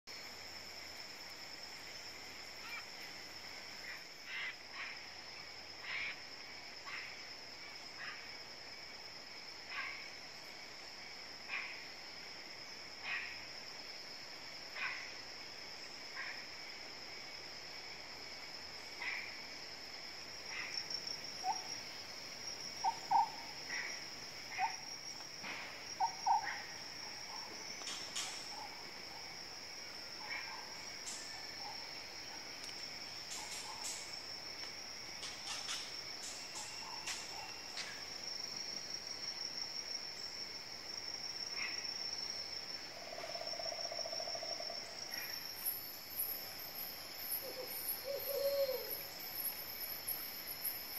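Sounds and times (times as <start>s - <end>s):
high insect drone: 0.1s - 50.9s.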